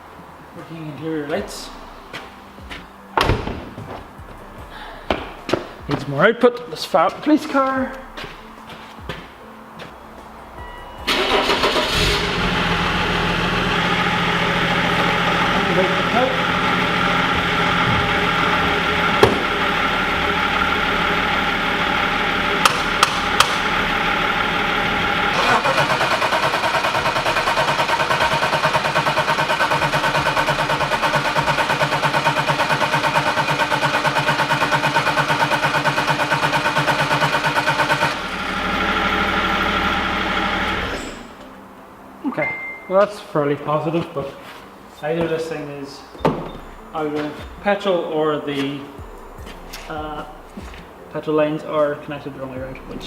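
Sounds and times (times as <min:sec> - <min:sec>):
engine running: 0:11.0 - 0:41.4
starter cranking engine: 0:11.1 - 0:41.0.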